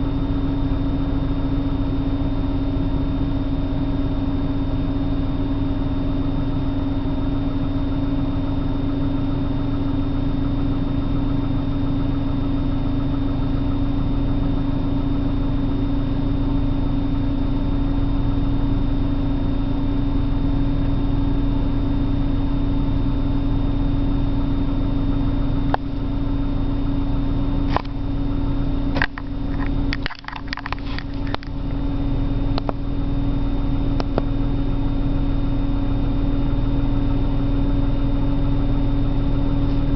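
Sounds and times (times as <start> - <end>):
car engine idling roughly: 25.0 - 34.6.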